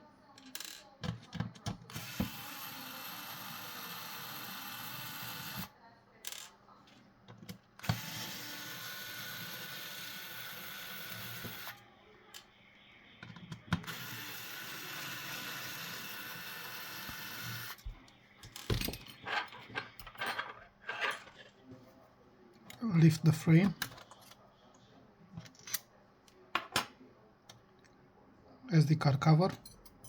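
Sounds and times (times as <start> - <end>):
electric screwdriver whirring: 1.9 - 5.7, 7.8 - 11.8, 13.8 - 17.8.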